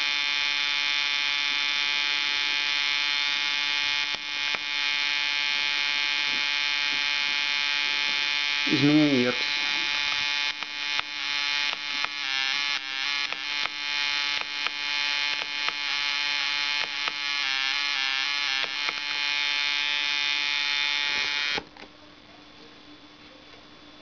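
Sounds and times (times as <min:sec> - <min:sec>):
high-pitched electric buzz: 0:00.0 - 0:21.7.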